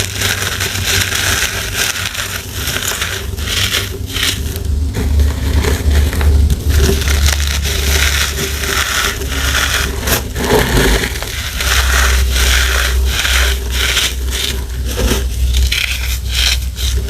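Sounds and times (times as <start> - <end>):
compressed powder blocks crunching: 0.0 - 17.0.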